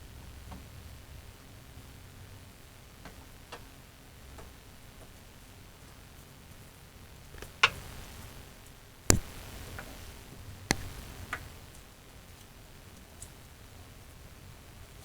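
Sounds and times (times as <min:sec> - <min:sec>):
hard object clicks and knocks: 0:09.1 - 0:09.9, 0:10.7 - 0:11.4.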